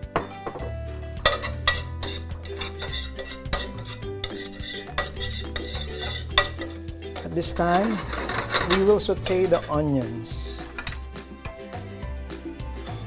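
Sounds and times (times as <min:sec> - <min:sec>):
background music: 0:00.0 - 0:13.0
utensil scraping frying pan: 0:01.2 - 0:11.2.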